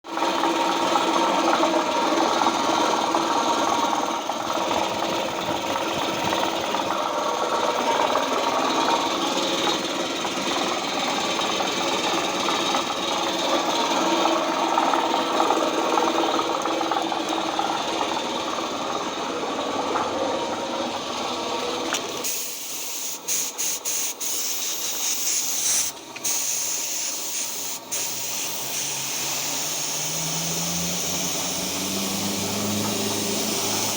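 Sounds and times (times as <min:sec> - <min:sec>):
air compressor motor humming: 0:01.8 - 0:33.9
air hissing: 0:22.2 - 0:33.9.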